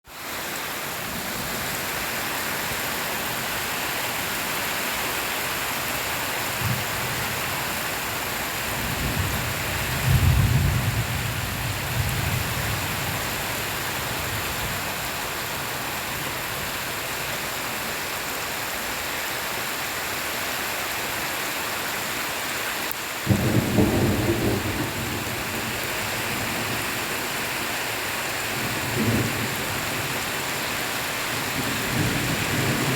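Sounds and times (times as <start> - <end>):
heavy rain falling: 0.0 - 32.9
thunder rumbling: 23.3 - 27.3, 31.3 - 32.9.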